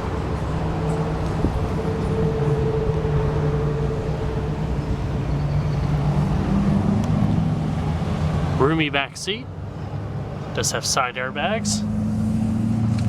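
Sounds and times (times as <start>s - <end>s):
vehicle engine idling: 0.0s - 9.1s.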